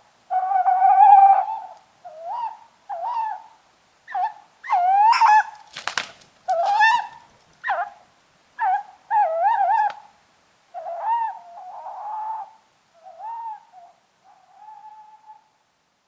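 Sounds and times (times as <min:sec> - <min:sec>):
owls hooting: 0:04.1 - 0:05.6, 0:06.5 - 0:08.0, 0:08.6 - 0:10.0, 0:10.8 - 0:15.4.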